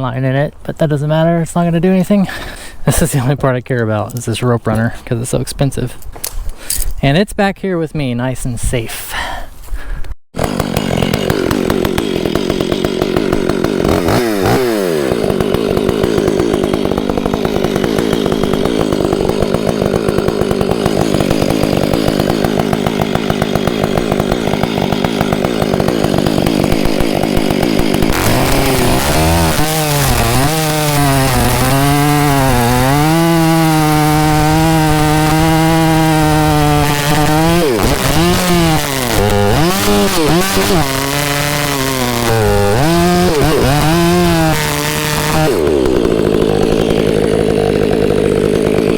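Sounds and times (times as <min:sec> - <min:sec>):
chainsaw running: 0:10.4 - 0:48.9.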